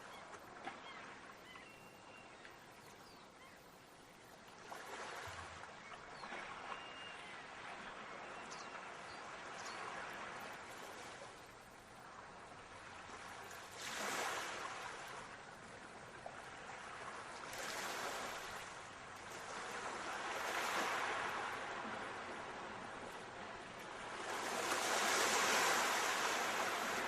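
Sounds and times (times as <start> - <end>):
sea waves washing onto shore: 16.9 - 27.0.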